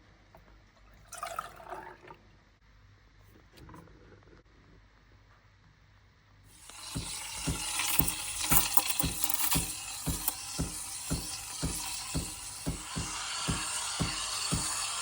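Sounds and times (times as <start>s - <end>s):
bright hiss: 6.5s - 15.0s
music with steady beat: 7.0s - 14.8s.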